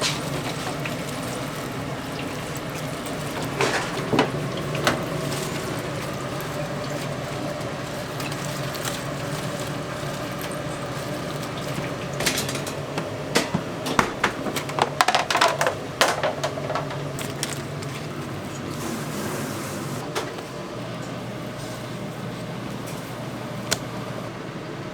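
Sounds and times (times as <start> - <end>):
steady machine hum: 0.0 - 24.9
dishes and utensils clinking: 3.1 - 5.2, 11.4 - 18.7.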